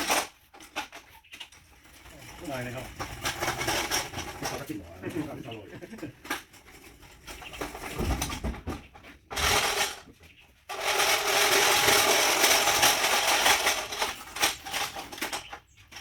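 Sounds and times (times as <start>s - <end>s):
oranges clattering through sorting machine: 0.0s - 6.7s, 10.7s - 16.0s.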